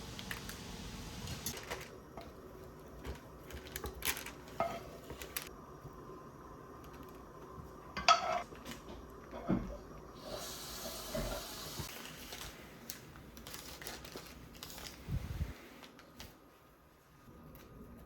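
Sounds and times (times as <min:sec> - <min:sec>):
hissing running water: 0:00.0 - 0:01.6, 0:09.8 - 0:11.9.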